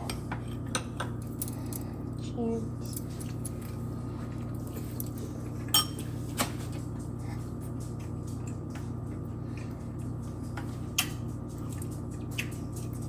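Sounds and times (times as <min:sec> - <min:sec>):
steady low hum: 0:00.0 - 0:13.0
dishes and cutlery clinking: 0:04.8 - 0:07.1.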